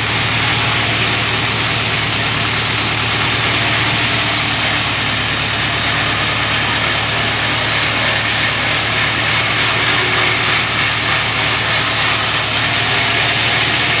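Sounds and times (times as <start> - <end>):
bandsaw running: 0.0 - 14.0.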